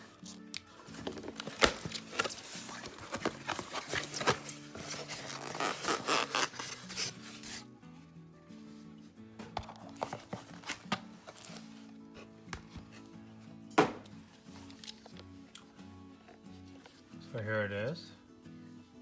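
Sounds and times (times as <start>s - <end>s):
quiet background music: 0.0s - 19.0s
packaging rubbing and scraping: 0.9s - 7.7s.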